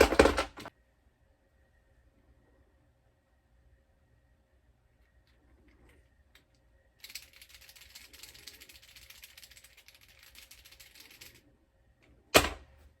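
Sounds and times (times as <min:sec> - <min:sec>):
plastic parts rattling: 0:00.0 - 0:00.7, 0:05.8 - 0:11.4.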